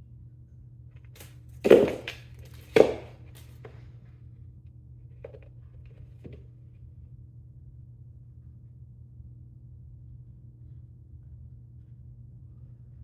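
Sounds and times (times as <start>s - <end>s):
cat landing thumps: 1.6s - 3.2s.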